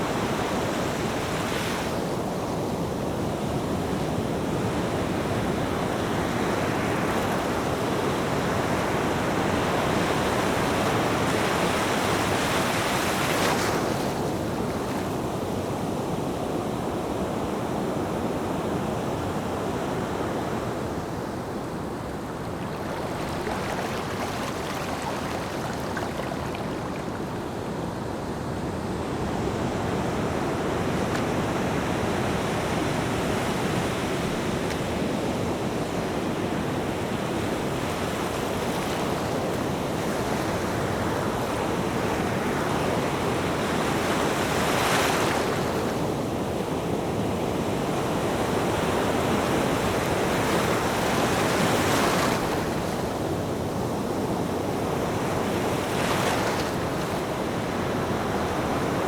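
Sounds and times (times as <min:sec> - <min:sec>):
waves breaking: 0:08.4 - 0:15.2, 0:21.2 - 0:28.1, 0:48.0 - 0:59.0.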